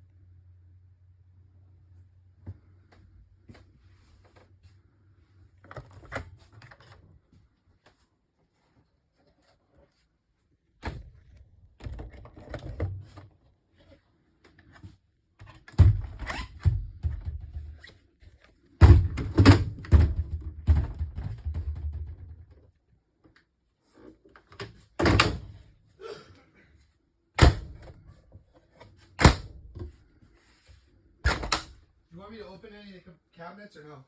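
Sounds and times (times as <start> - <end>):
thuds and knocks: 18.8 - 22.4.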